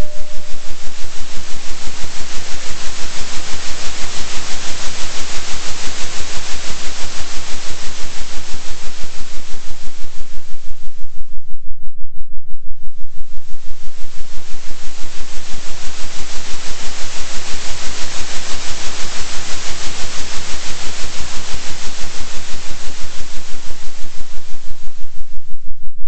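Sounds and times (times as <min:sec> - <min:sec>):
steady low tone: 0:00.0 - 0:01.4
pulsing synthesized hiss: 0:00.0 - 0:10.6, 0:13.4 - 0:25.2.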